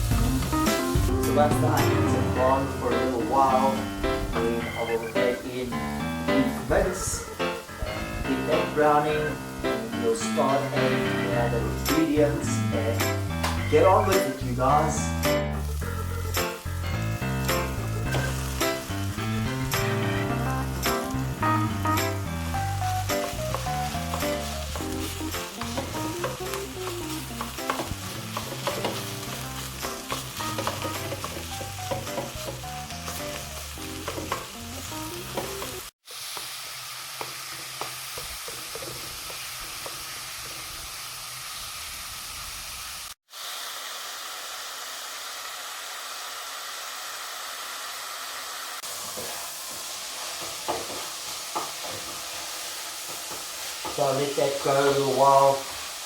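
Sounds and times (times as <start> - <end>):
background music with a beat: 0.0 - 8.8, 10.8 - 35.8
onions and mince sizzling in a pan: 0.0 - 56.0.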